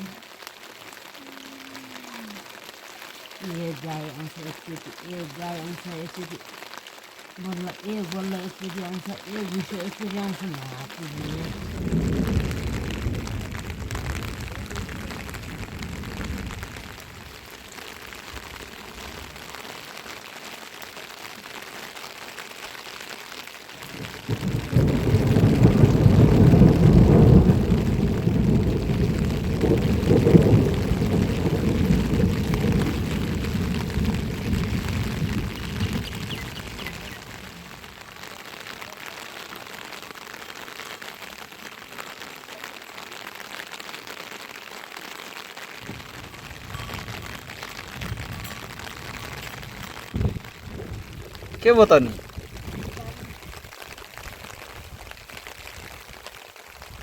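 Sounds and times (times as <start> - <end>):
steady rain falling: 0.0 - 57.0
low rumble of thunder: 8.2 - 19.6, 23.8 - 38.3, 45.8 - 53.7.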